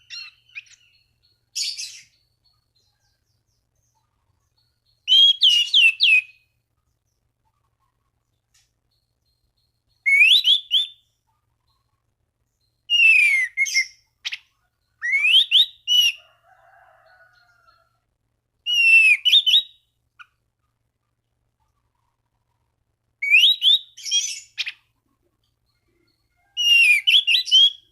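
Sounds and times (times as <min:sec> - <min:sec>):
thrush singing whistled notes: 0:05.0 - 0:06.5, 0:09.0 - 0:11.1, 0:12.7 - 0:16.2, 0:18.7 - 0:19.9, 0:23.2 - 0:24.8, 0:25.7 - 0:27.9.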